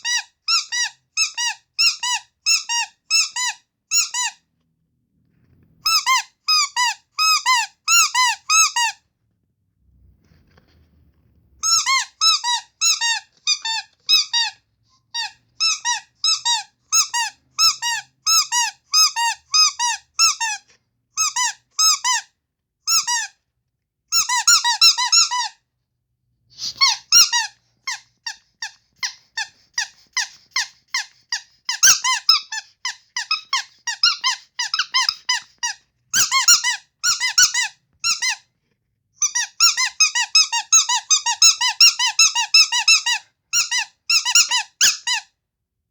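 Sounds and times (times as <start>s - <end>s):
squeaky toy squeaks: 0.0s - 4.4s, 5.8s - 9.0s, 11.6s - 23.4s, 24.1s - 25.6s, 26.6s - 38.5s, 39.2s - 45.4s.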